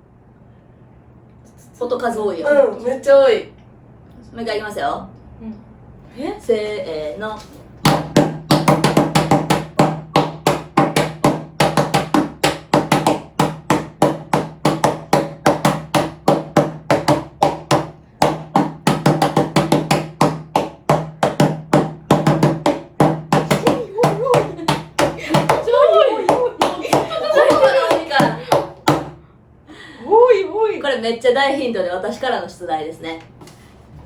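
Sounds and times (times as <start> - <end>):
hands drumming on a tabletop: 7.8 - 29.2.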